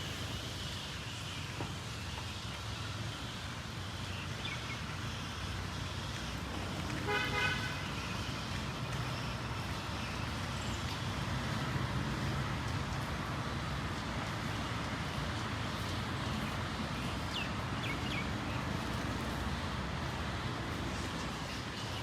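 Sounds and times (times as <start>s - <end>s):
road traffic rumble: 0.0s - 22.0s
horn toot: 7.0s - 7.9s.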